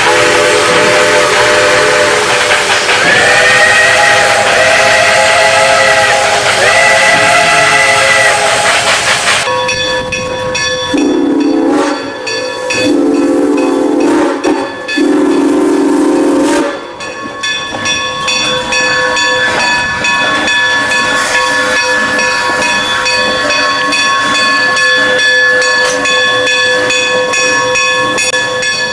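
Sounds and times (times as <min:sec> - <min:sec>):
steam hissing: 0:00.0 - 0:09.5, 0:18.6 - 0:25.2
steam whistle blasts: 0:00.0 - 0:09.5, 0:11.0 - 0:16.9.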